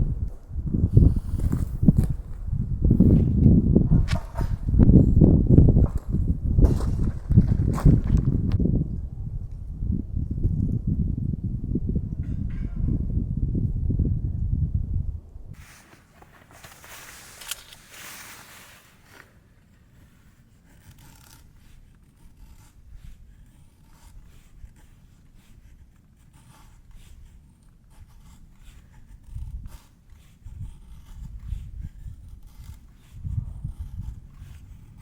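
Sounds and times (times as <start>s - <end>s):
low bumps: 0.0s - 8.8s
scraping rustle: 15.6s - 22.8s.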